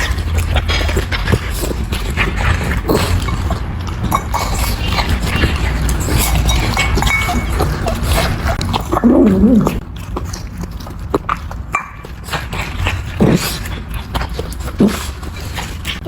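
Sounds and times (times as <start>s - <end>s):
dog whimpering: 8.8s - 9.8s.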